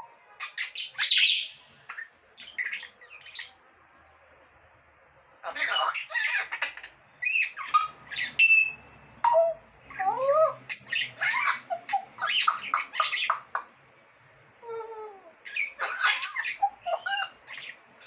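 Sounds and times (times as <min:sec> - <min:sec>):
parrot chattering and whistling: 0:05.4 - 0:13.7, 0:15.4 - 0:17.8.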